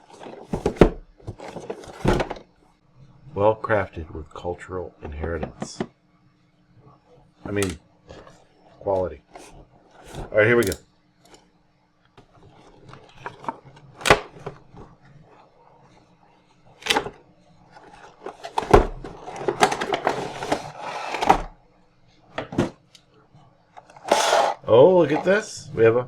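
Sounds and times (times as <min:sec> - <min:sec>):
packaging rustling and scraping: 0:00.0 - 0:02.4, 0:12.2 - 0:16.1, 0:16.7 - 0:21.5, 0:23.8 - 0:25.4.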